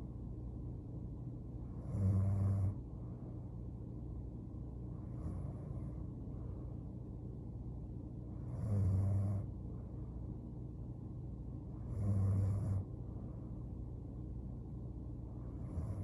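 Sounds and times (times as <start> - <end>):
woman snoring: 1.8 - 2.8, 8.5 - 9.5, 11.8 - 12.8, 15.6 - 16.0.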